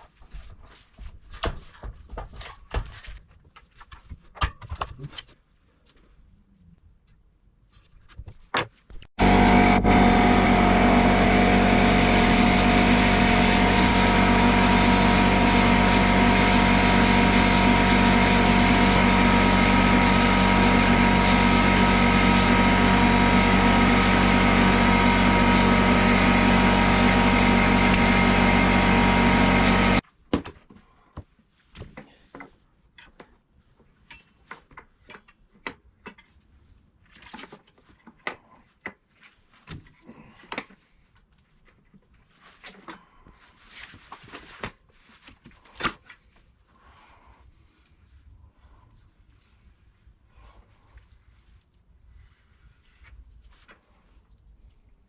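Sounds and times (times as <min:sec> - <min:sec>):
loud machine drone: 0:09.2 - 0:30.0.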